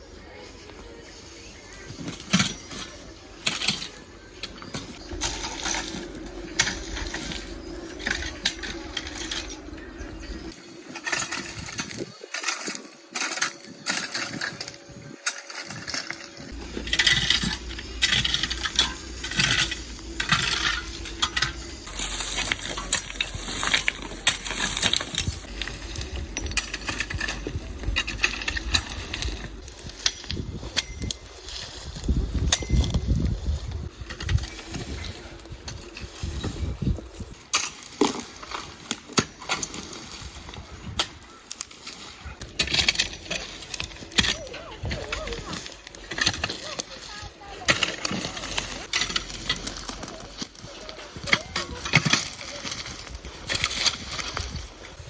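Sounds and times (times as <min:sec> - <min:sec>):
hard objects clinking and knocking: 0:02.0 - 0:31.3.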